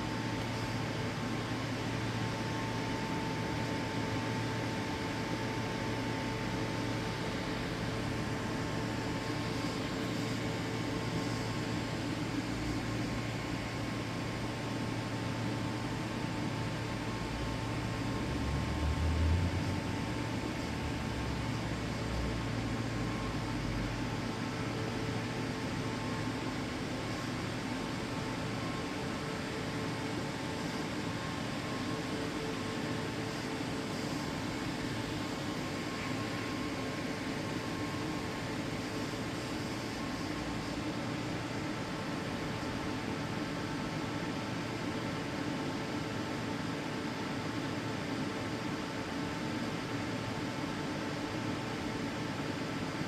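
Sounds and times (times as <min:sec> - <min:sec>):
constant hum: 0:00.0 - 0:53.0.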